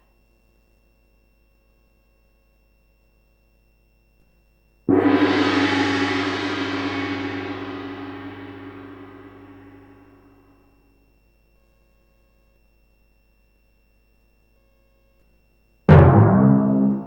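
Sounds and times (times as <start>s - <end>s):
gong struck and ringing: 4.9s - 10.4s, 15.9s - 17.0s.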